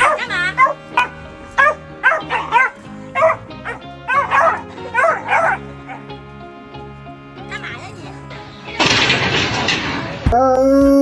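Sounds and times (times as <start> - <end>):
dog barking: 0.0 - 6.1
background music: 0.0 - 11.0.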